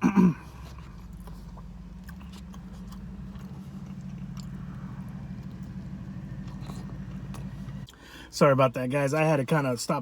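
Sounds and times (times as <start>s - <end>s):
faint chewing: 0.0s - 8.0s
steady low hum: 0.0s - 8.4s.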